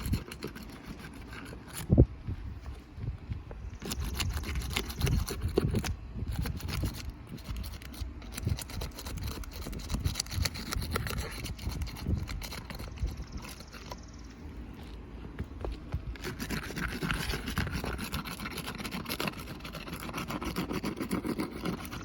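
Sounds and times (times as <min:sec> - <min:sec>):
scraping and knocking on roof shingle: 0:15.2 - 0:22.0.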